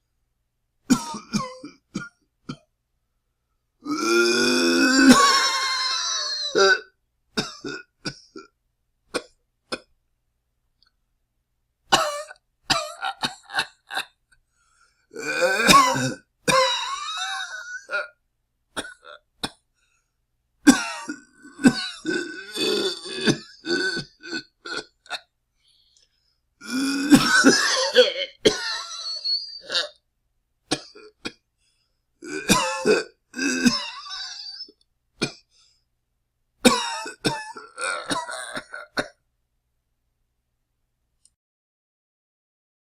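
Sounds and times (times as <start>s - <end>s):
person clearing throat: 0.9s - 2.6s, 3.9s - 5.7s, 12.0s - 14.1s, 15.2s - 18.1s, 20.7s - 25.2s, 26.6s - 30.0s, 32.2s - 35.4s, 36.7s - 39.2s
person coughing: 0.9s - 2.6s, 12.0s - 14.1s, 15.2s - 18.1s, 20.7s - 25.2s, 26.6s - 29.9s, 32.2s - 35.4s, 36.7s - 39.2s.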